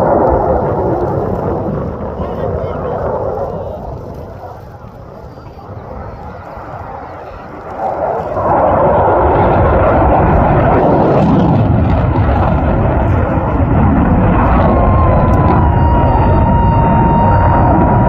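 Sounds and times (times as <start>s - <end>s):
airplane engines rushing: 0.0s - 18.0s.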